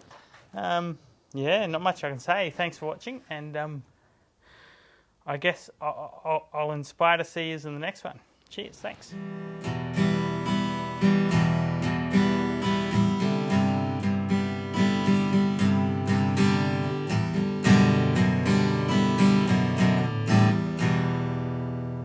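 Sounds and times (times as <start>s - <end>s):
acoustic guitar strumming: 9.1s - 22.0s.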